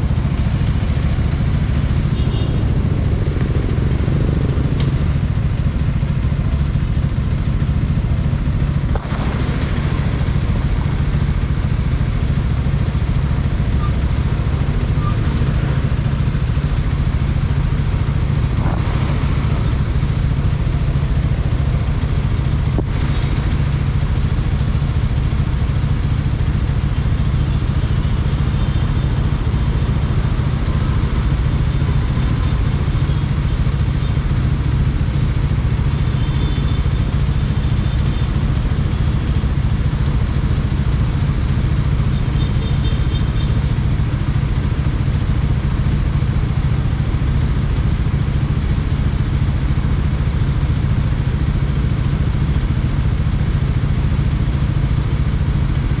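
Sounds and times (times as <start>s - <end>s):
motorcycle engine rumbling: 0.0s - 56.0s.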